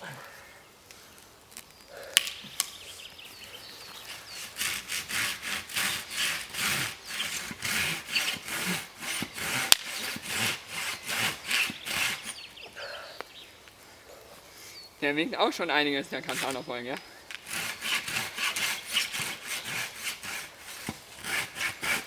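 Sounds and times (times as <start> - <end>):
saw cutting through wood: 3.9 - 12.5, 16.1 - 22.0.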